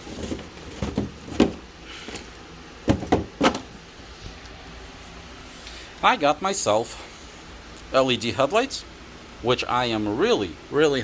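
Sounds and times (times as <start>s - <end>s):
sharp handling knocks: 2.8s - 3.7s.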